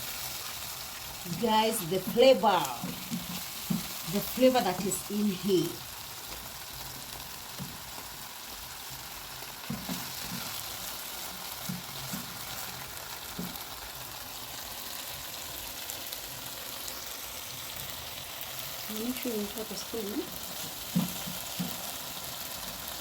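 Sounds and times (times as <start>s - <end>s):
liver sizzling in a pan: 0.0s - 23.0s
stirring knocks: 1.3s - 5.0s, 9.6s - 13.7s, 20.4s - 22.1s.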